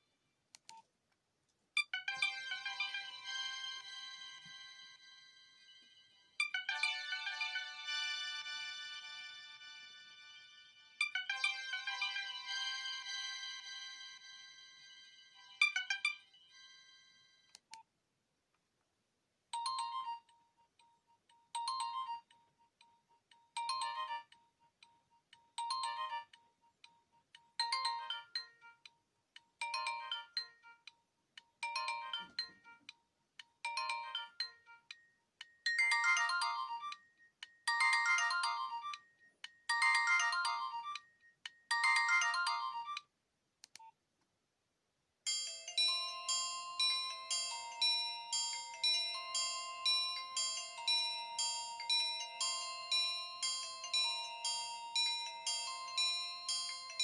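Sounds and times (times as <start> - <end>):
mobile phone ringtone: 1.8 - 17.5, 23.6 - 24.3, 25.6 - 26.4, 27.6 - 28.8, 29.6 - 30.8, 31.6 - 32.8, 33.6 - 35.0, 35.6 - 43.1, 45.3 - 57.0.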